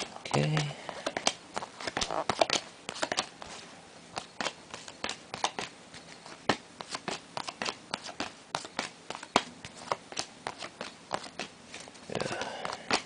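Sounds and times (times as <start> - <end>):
trading cards flicking: 0.0 - 3.4, 12.2 - 13.0.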